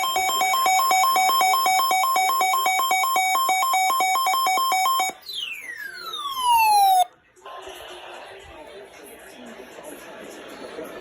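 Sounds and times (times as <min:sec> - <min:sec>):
alternating buzzy beep: 0:00.0 - 0:07.0.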